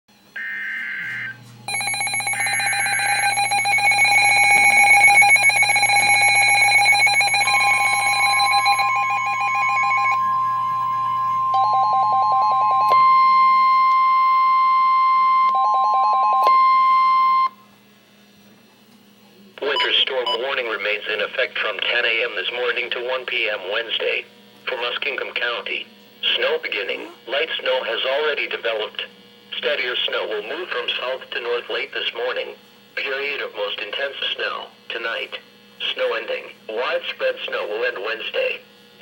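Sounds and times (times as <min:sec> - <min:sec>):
steady radio warning tone: 0:00.4 - 0:17.4, 0:19.6 - 0:24.1
data header tones: 0:00.4 - 0:17.5, 0:19.6 - 0:20.5
electronic alarm beeping: 0:00.4 - 0:17.6, 0:19.6 - 0:20.4.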